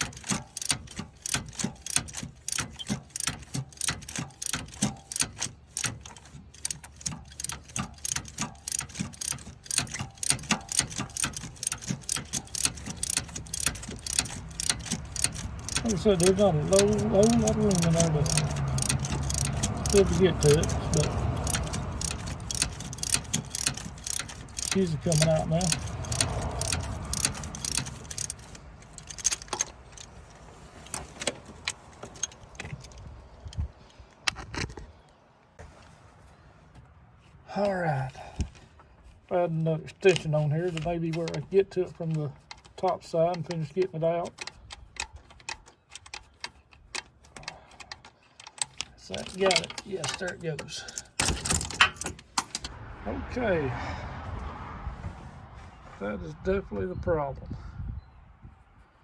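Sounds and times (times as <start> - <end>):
socket ratchet clicking: 0.0 - 33.1, 40.0 - 52.7.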